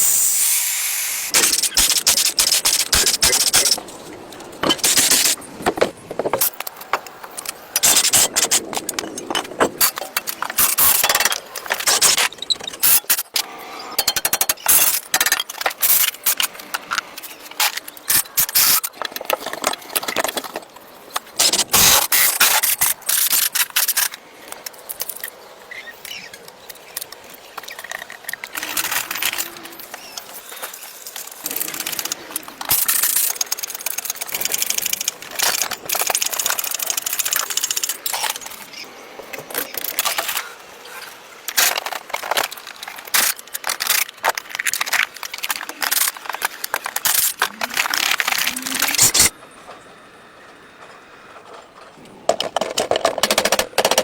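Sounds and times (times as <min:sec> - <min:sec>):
hissy bursts: 0:00.0 - 0:03.8.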